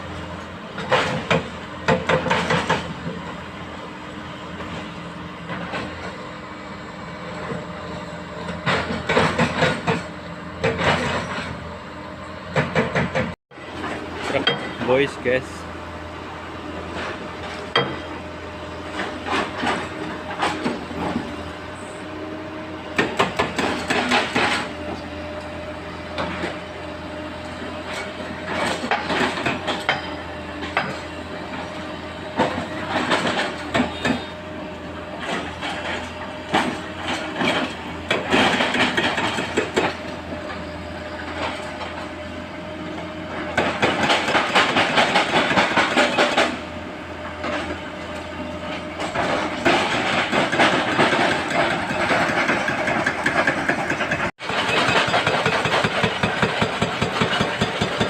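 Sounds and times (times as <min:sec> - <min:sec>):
excavator engines running: 0:00.0 - 0:58.0
metallic clanking and rattling: 0:47.3 - 0:58.0.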